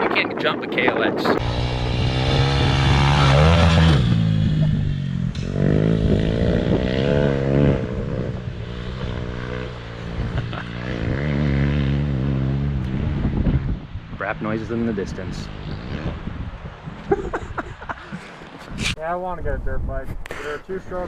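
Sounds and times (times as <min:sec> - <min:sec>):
dirt bike engine revving: 0:01.4 - 0:17.2.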